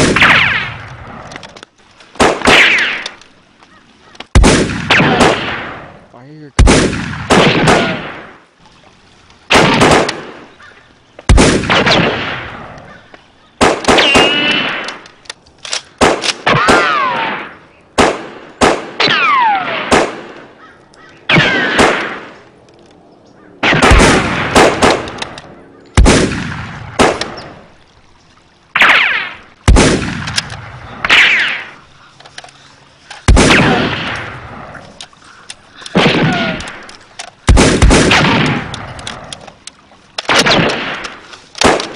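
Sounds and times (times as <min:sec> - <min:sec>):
gunshots with ringing tail: 0:00.0 - 0:01.3, 0:02.2 - 0:03.1, 0:04.4 - 0:06.0, 0:06.6 - 0:08.4, 0:09.5 - 0:10.5, 0:11.3 - 0:12.8, 0:13.6 - 0:15.0, 0:16.0 - 0:20.6, 0:21.3 - 0:22.4, 0:23.6 - 0:27.7, 0:28.7 - 0:31.8, 0:33.3 - 0:34.8, 0:35.9 - 0:36.9, 0:37.5 - 0:39.1, 0:40.3 - 0:41.9
ricochet whine: 0:28.8 - 0:32.4.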